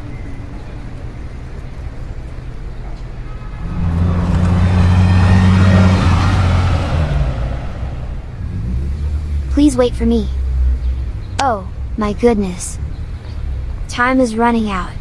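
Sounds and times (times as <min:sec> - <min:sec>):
car engine running: 0:03.6 - 0:15.0.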